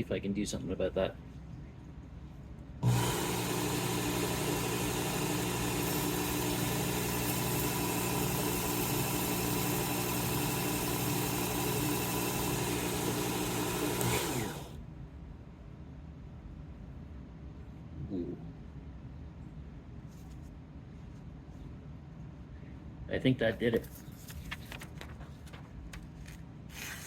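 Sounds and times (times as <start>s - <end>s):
belt sharpener motor humming: 2.8s - 14.8s
motor winding down: 2.8s - 14.8s.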